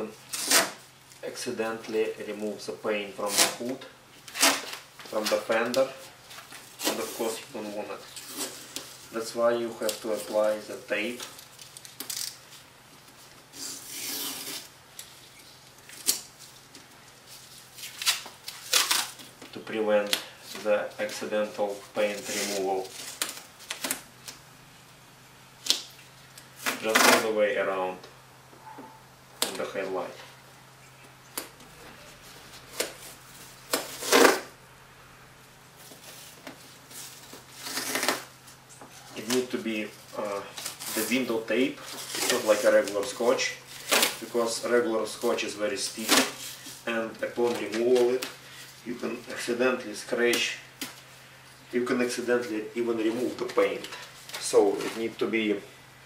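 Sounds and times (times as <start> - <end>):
tape ripping: 0.3 - 0.8, 3.2 - 7.4, 8.0 - 9.2, 11.2 - 12.6, 13.3 - 16.6, 17.3 - 19.4, 22.0 - 24.4, 25.6 - 27.3, 32.5 - 34.5, 36.9 - 38.3, 40.3 - 44.5, 45.3 - 48.4.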